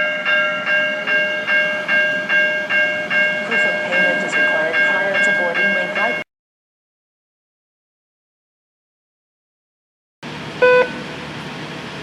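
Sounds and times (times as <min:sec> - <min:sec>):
rail warning bell ringing: 0:00.0 - 0:06.3, 0:10.6 - 0:11.2.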